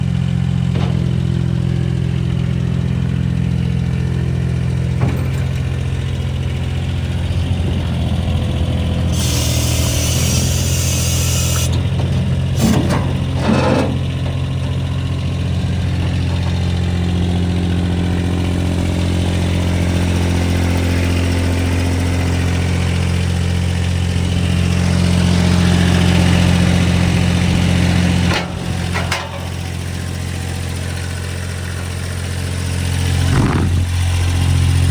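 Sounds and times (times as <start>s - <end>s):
diesel engine running: 0.0s - 34.9s
short clunks: 0.7s - 1.4s, 4.9s - 5.9s, 9.0s - 17.2s, 28.2s - 29.6s
hiss: 9.2s - 11.7s.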